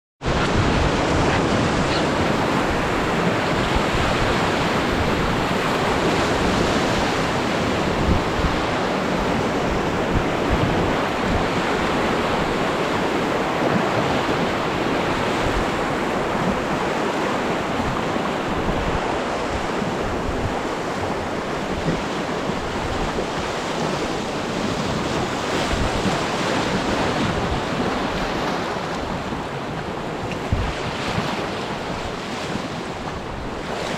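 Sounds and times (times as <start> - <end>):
whitewater rushing: 0.2 - 33.9
wind noise on microphone: 0.2 - 33.9.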